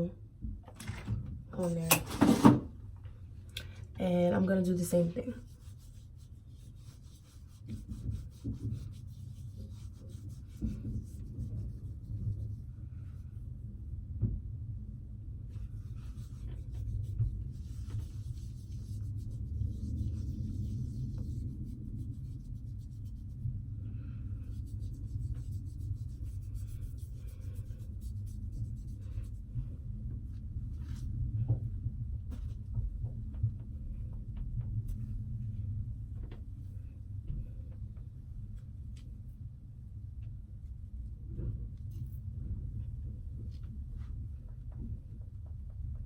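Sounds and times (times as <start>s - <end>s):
steady low rumble: 2.7s - 46.0s
paper towel rubbing skin: 4.6s - 13.2s, 15.5s - 23.4s, 24.3s - 29.5s.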